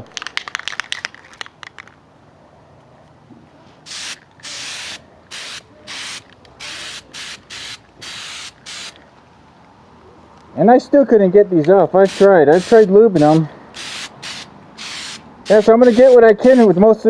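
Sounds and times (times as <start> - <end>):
spray paint can hissing: 3.9 - 9.0, 12.0 - 16.7.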